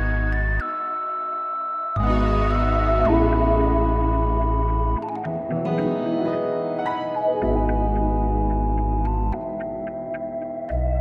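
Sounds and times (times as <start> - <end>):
held keyboard chords: 0.0 - 11.0
deep bass note: 2.0 - 5.0.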